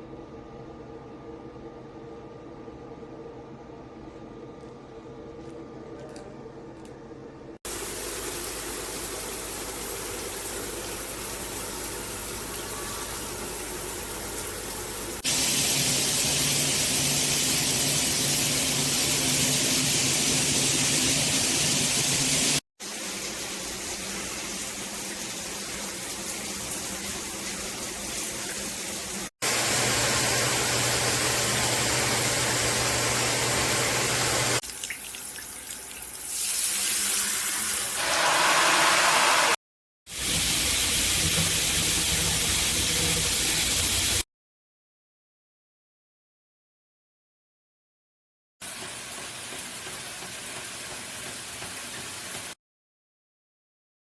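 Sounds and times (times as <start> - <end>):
water spraying from shower head: 15.1 - 34.6, 37.8 - 44.2.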